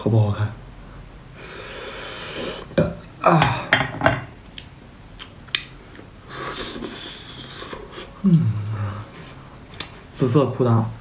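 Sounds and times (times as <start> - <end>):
slurping: 5.9 - 9.9.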